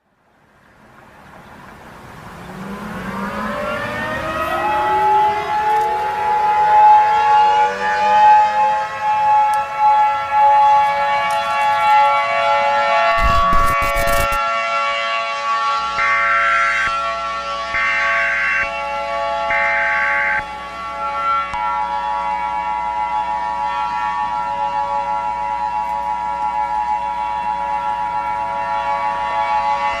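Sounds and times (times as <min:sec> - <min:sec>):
air raid siren wailing: 0:02.0 - 0:30.0
brief crackle: 0:13.1 - 0:14.4.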